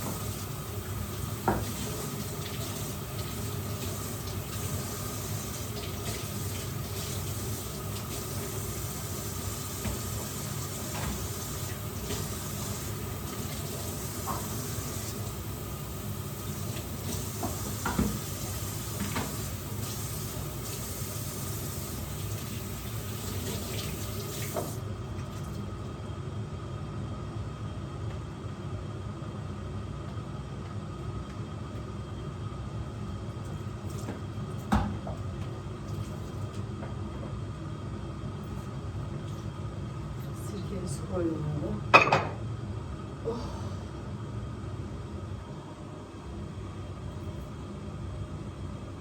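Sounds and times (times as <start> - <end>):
tap water running into sink: 0.0 - 25.7.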